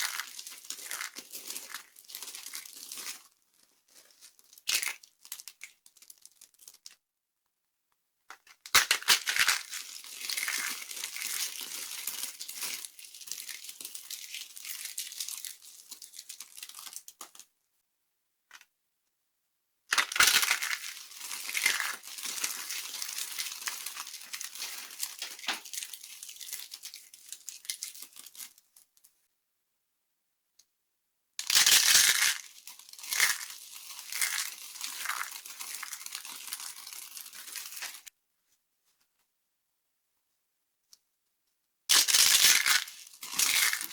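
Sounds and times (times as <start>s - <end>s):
dry soap crunching and crackling: 0.0s - 7.0s, 8.3s - 17.5s, 19.9s - 29.1s, 31.4s - 38.1s, 41.9s - 43.9s.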